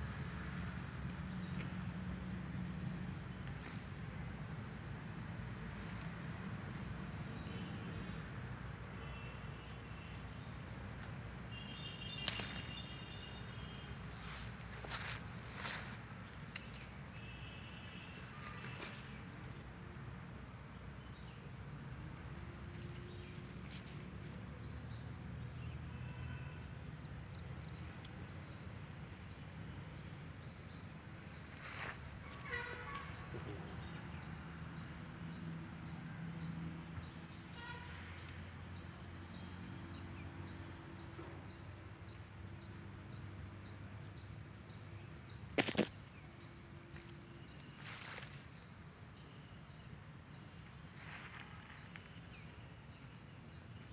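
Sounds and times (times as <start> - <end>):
insects droning: 0.0 - 53.9
insect ticking: 0.2 - 20.5, 44.2 - 49.8.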